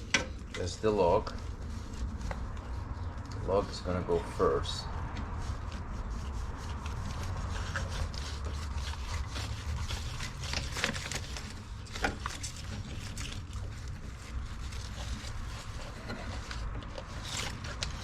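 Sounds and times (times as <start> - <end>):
steady low rumble: 0.0 - 10.6.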